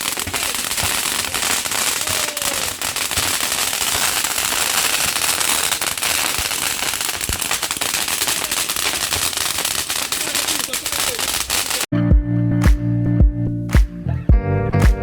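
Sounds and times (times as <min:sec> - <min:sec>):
fireworks crackling: 0:00.0 - 0:11.9.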